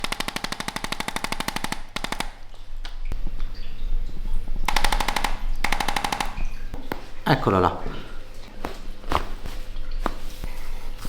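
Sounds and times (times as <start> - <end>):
rapid mechanical tapping: 0.0 - 3.0, 4.6 - 6.9.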